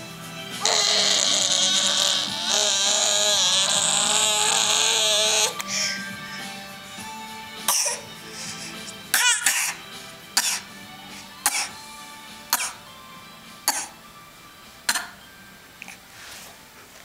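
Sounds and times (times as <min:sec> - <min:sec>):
soft background music: 0:00.0 - 0:17.0
baby coughing: 0:07.6 - 0:09.8, 0:10.4 - 0:10.7, 0:11.4 - 0:11.8, 0:12.5 - 0:12.8, 0:13.7 - 0:14.0, 0:14.9 - 0:15.2.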